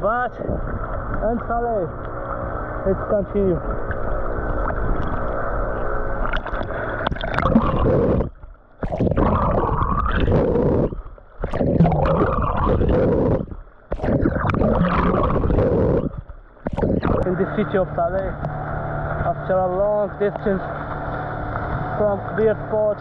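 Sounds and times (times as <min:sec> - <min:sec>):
water gurgling and splashing: 0:00.0 - 0:23.0.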